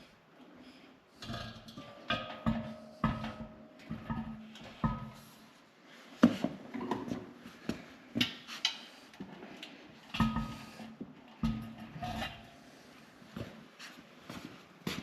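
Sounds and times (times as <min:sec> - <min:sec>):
metal knocks and clanks: 0:01.2 - 0:05.4, 0:10.2 - 0:10.7, 0:11.4 - 0:12.5.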